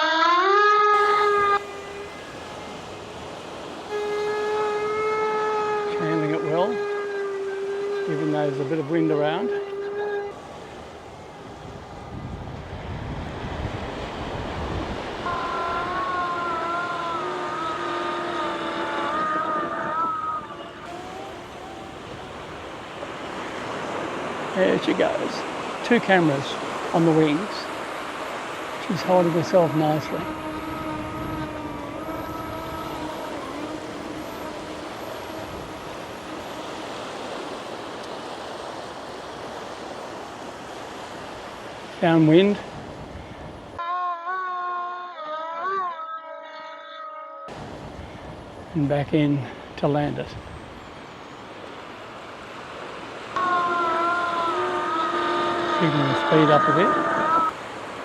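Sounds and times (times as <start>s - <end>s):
surf: 0.0s - 44.0s, 47.5s - 58.0s
wind buffeting microphone: 9.5s - 43.8s, 47.5s - 58.0s
faint model plane motors humming: 15.1s - 24.4s, 27.7s - 38.7s, 53.4s - 57.6s
model plane motors whining: 29.1s - 37.6s.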